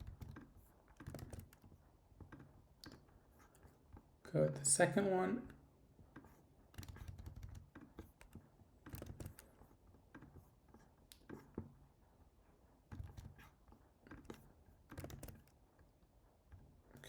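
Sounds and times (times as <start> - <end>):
faint keyboard keystrokes: 0.0 - 4.1, 6.1 - 11.8, 12.9 - 15.9.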